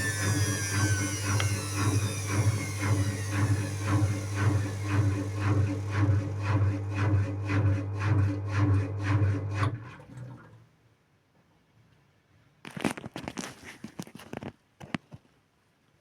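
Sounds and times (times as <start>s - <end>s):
washing machine motor humming: 0.0s - 10.4s.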